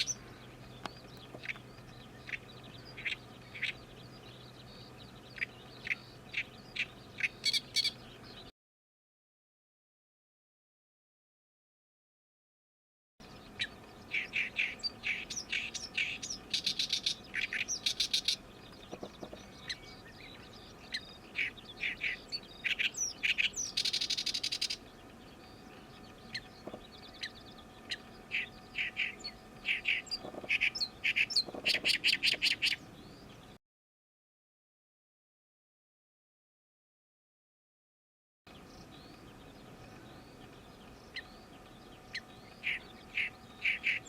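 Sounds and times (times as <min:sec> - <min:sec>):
reed warbler singing: 0:00.0 - 0:08.5, 0:13.2 - 0:33.6, 0:38.5 - 0:44.0.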